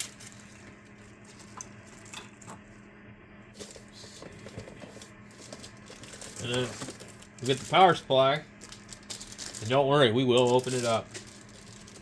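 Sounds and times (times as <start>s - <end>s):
packaging rustling: 3.6s - 12.0s.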